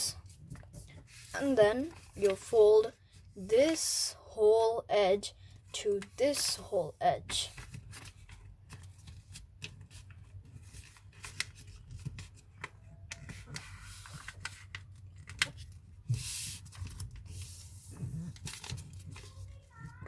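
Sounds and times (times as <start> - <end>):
paper being folded and creased: 0.2 - 2.5, 7.5 - 20.0.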